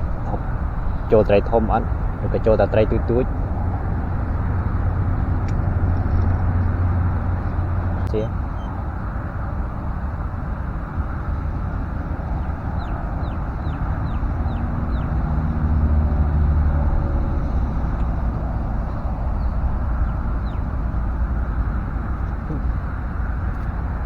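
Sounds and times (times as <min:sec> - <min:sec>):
low rumbling background noise: 0:00.0 - 0:24.0
bird chirping: 0:07.4 - 0:09.1, 0:12.3 - 0:21.6.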